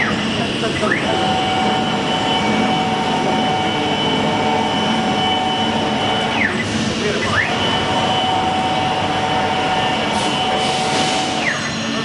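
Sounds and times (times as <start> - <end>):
plasma cutter hissing roar: 6.4 - 12.0.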